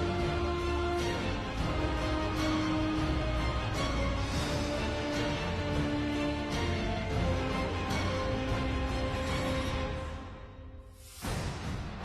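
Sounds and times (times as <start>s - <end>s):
background music with light beat: 0.0s - 12.0s.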